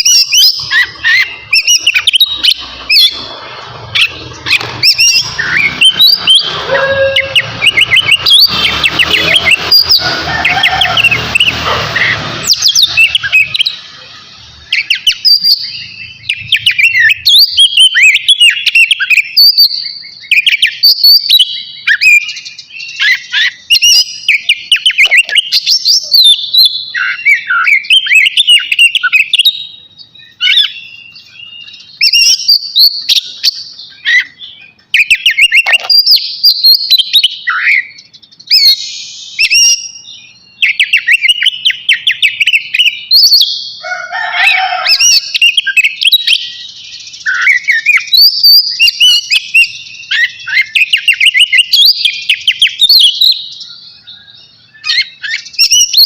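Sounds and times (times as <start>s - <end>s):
bird singing trills: 0.0s - 56.0s.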